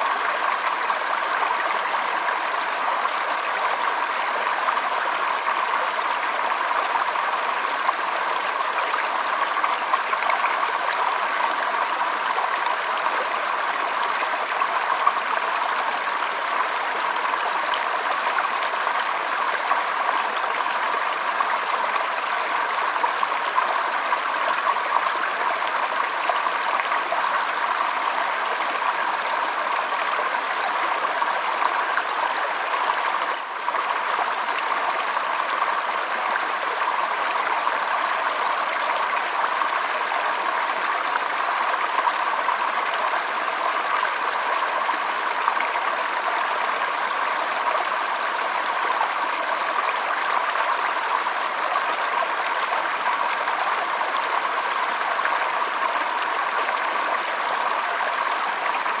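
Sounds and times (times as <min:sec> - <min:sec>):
stream babbling: 0:00.0 - 0:59.0.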